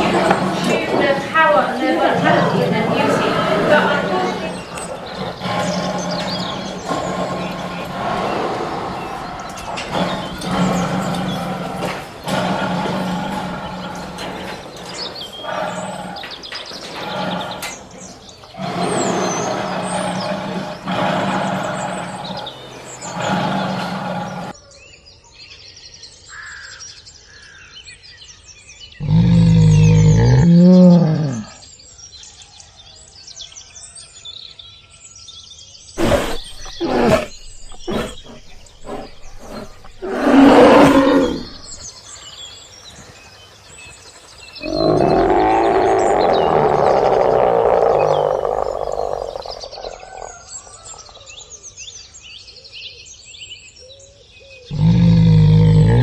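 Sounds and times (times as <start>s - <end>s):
wild animal roaring: 0.0s - 24.6s, 29.0s - 31.6s, 35.9s - 41.9s, 44.4s - 51.2s, 54.6s - 56.0s
birds chirping: 0.0s - 56.0s.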